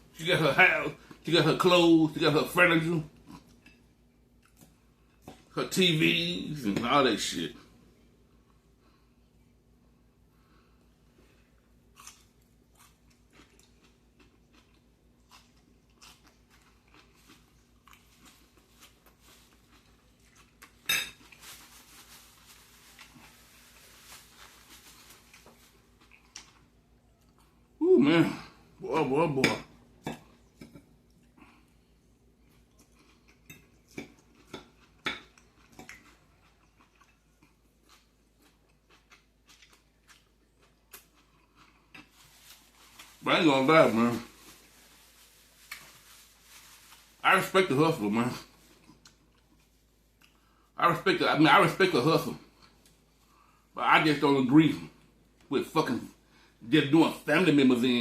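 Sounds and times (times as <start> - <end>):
man chewing and crunching food: 3.0 - 5.6, 7.6 - 50.8.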